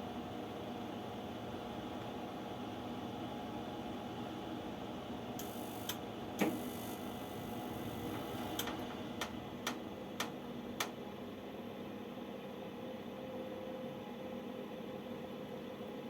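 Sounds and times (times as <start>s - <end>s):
gas boiler humming: 0.0s - 12.2s.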